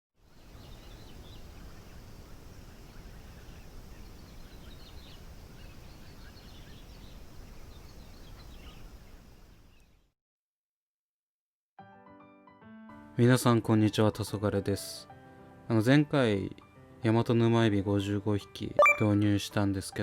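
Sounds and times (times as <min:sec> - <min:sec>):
small birds chirping: 0:00.3 - 0:10.1.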